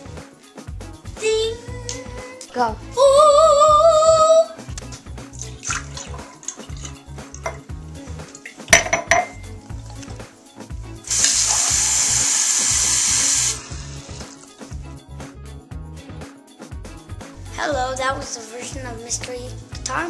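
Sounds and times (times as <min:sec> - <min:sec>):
music with bass beat: 0:00.0 - 0:02.9, 0:03.5 - 0:11.1, 0:13.8 - 0:18.0
loud steady hiss: 0:11.1 - 0:14.4.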